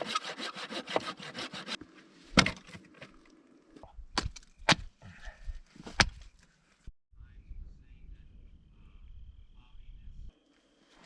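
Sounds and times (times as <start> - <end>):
rasping wood strokes: 0.0 - 1.9.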